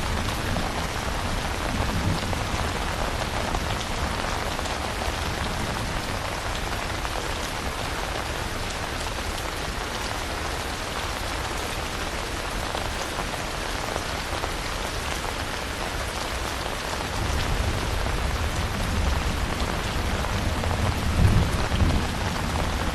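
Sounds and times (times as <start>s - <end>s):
heavy rain falling: 0.0s - 22.9s
low thunder rumble: 17.2s - 22.9s.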